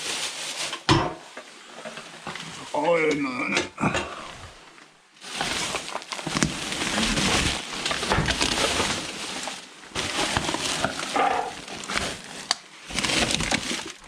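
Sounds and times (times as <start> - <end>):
junk rustling and clattering: 5.2 - 14.0.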